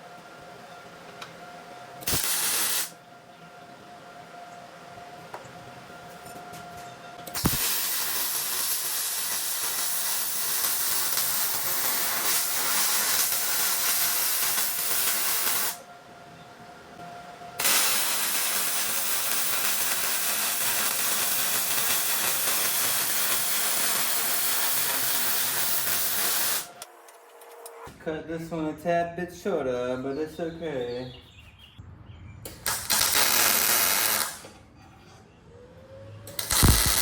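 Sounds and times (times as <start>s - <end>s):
plasma cutter click: 2.0s - 2.9s, 7.3s - 15.7s, 36.3s - 37.0s
plasma cutter hissing: 2.0s - 2.9s, 7.3s - 15.8s, 17.6s - 26.8s, 32.6s - 34.4s, 36.4s - 37.0s.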